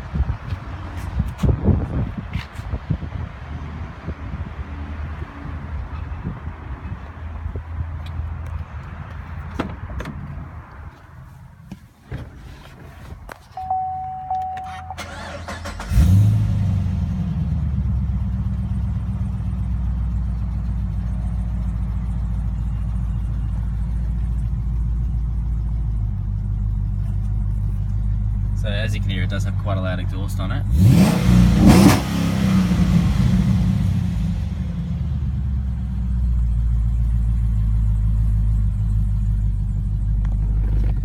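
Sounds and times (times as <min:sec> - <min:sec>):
car engine starting and idling: 0:05.5 - 0:41.0
electronic chime: 0:13.6 - 0:15.1.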